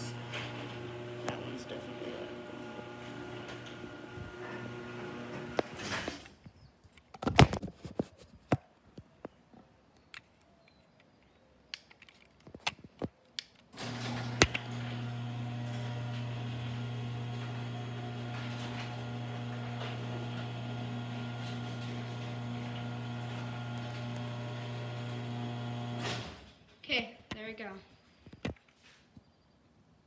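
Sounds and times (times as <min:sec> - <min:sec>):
garage door opener motor: 0:00.0 - 0:06.3, 0:13.8 - 0:26.6.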